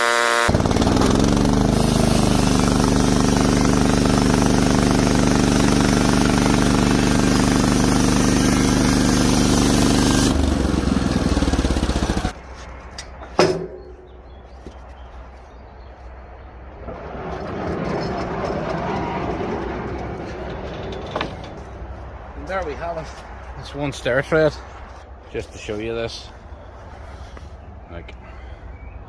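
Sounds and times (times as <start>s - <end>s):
sawmill sawing board: 0.0s - 12.4s.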